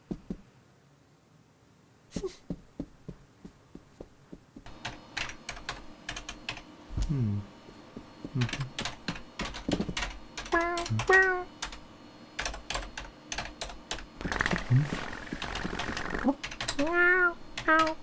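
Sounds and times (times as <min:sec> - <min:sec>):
computer keyboard typing: 0:04.7 - 0:06.7, 0:08.4 - 0:11.8, 0:12.4 - 0:16.9, 0:17.6 - 0:18.0
short low voice sounds: 0:07.0 - 0:07.5, 0:14.2 - 0:15.5.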